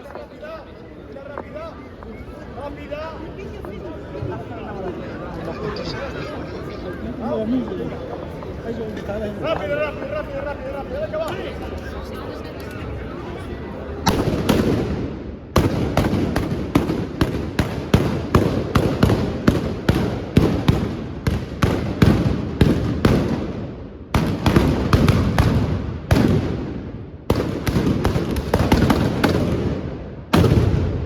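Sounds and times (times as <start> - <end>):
blunderbuss shots echoing: 14.0 - 31.0.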